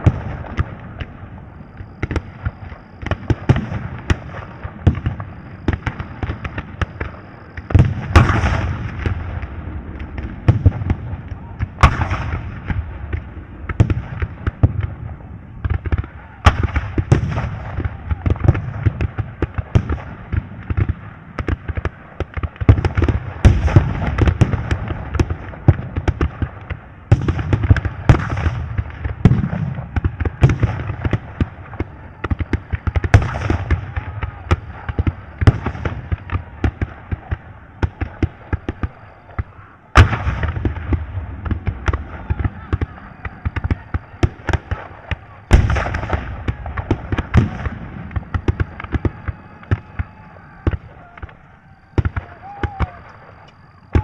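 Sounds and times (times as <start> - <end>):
gunfire cracks: 2.0 - 15.0, 40.0 - 53.4
explosion booms: 2.0 - 26.5, 40.0 - 51.3.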